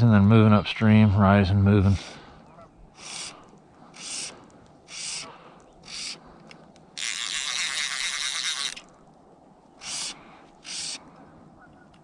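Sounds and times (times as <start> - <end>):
fishing reel ratchet buzzing: 4.0 - 6.2, 7.0 - 8.9, 9.8 - 11.0.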